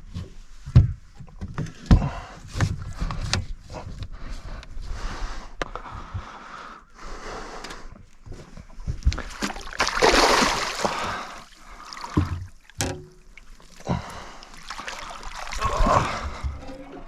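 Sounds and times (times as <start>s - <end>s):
water splashing off landing net: 9.2s - 13.2s
knocks against boat: 12.2s - 13.2s.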